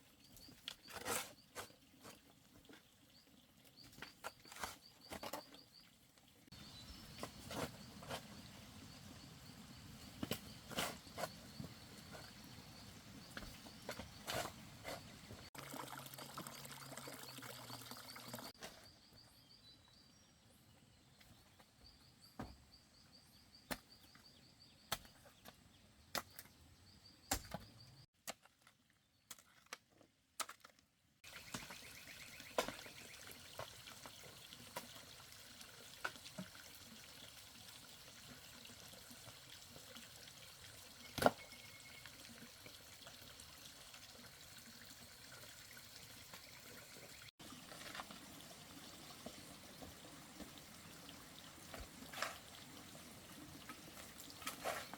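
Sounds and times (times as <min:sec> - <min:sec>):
trickle of running water: 0:15.3 - 0:18.6, 0:31.2 - 0:54.9.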